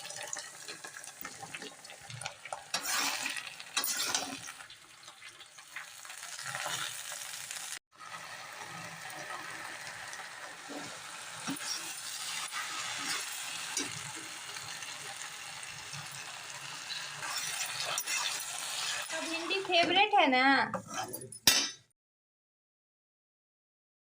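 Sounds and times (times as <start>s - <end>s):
okra sizzling in a pan: 0.0s - 20.3s
spatula scraping a pan: 0.3s - 7.4s, 8.6s - 20.1s, 20.7s - 21.4s.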